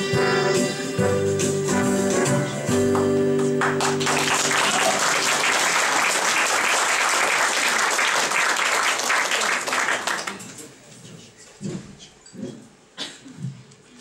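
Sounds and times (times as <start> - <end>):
instrumental music: 0.0 - 5.3
audience applause: 3.5 - 10.5.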